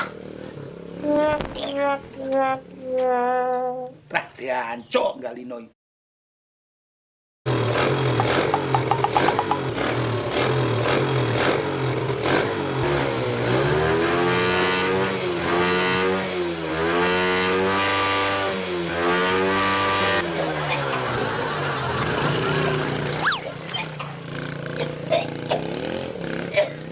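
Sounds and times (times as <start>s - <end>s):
motorcycle engine revving: 0.0s - 1.9s, 7.5s - 26.9s.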